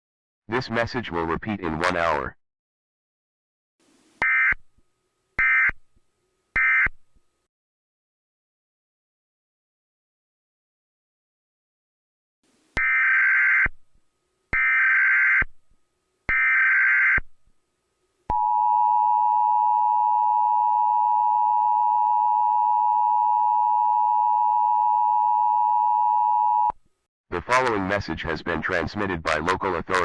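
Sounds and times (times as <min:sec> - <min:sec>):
steady attention tone: 0:18.3 - 0:26.8.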